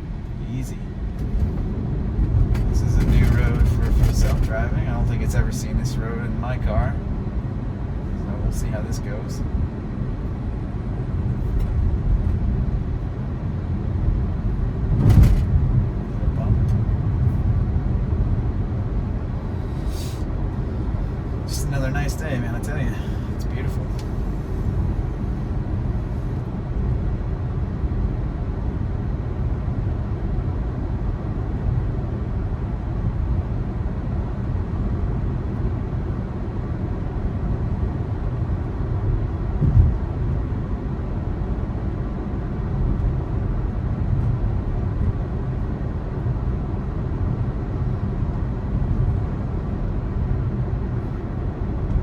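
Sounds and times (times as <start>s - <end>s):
road and tyre rumble: 0.0s - 52.0s
short thump: 15.0s - 15.6s, 39.6s - 40.0s.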